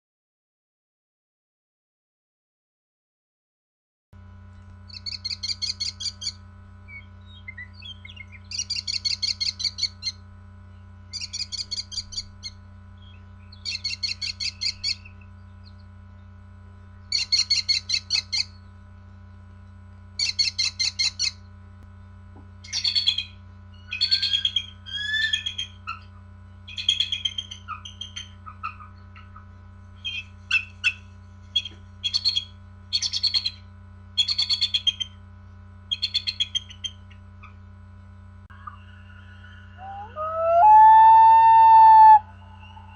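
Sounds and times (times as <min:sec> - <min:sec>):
steady low hum: 0:04.2 - 0:42.9
bird-like chirping trills: 0:04.9 - 0:18.7, 0:20.2 - 0:21.4, 0:31.6 - 0:33.6, 0:38.5 - 0:42.9
gliding whistles: 0:38.6 - 0:42.9.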